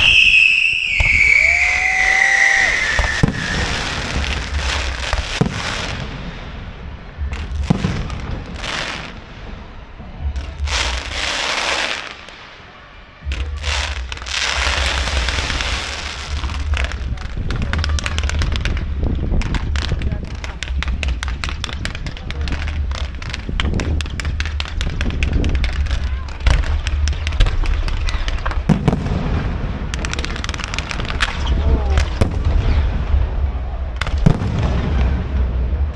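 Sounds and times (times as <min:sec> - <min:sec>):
firework whistle falling in pitch: 0:00.0 - 0:03.8
firework cracks and bursts: 0:00.0 - 0:35.9.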